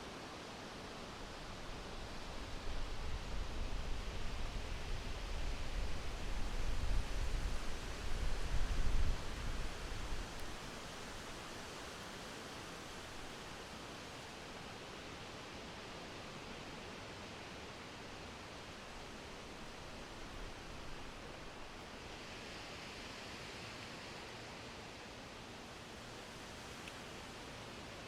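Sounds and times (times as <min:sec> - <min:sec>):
wind rustling leaves: 0:00.0 - 0:28.0.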